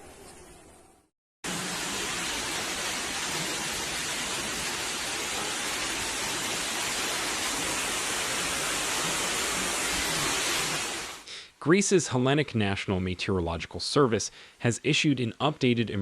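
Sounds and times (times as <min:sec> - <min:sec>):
water rushing: 0:01.4 - 0:11.3.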